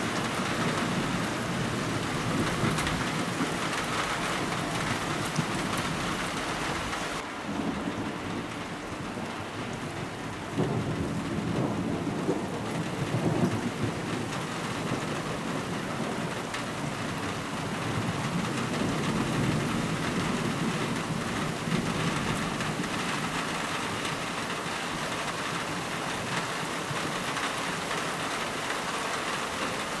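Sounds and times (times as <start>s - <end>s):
thunder rumbling: 0.0s - 9.3s
steady rain: 0.0s - 30.0s.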